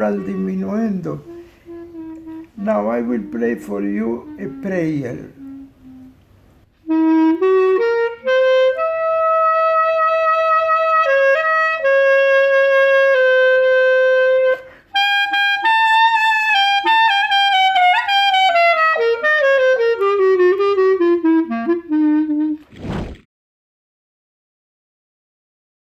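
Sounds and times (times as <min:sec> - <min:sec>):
woodwind solo melody: 0:00.0 - 0:22.6
breath: 0:01.4 - 0:01.7, 0:14.6 - 0:14.9.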